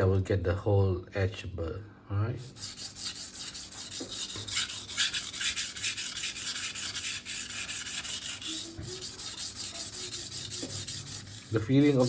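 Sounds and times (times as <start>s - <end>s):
knife scraping on whetstone: 2.4s - 12.0s.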